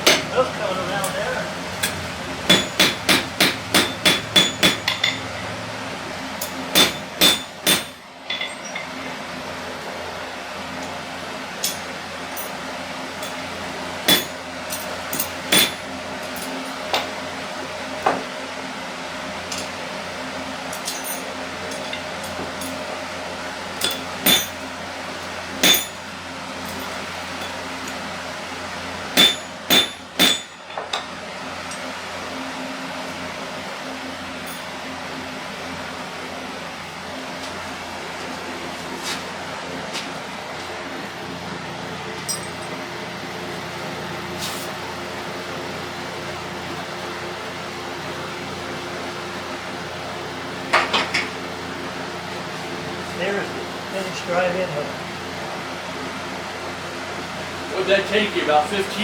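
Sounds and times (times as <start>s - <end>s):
hammer ringing on anvil: 0.0s - 0.3s, 1.8s - 5.2s, 6.4s - 9.0s, 14.1s - 15.9s, 23.8s - 24.6s, 25.6s - 26.0s, 29.2s - 31.1s.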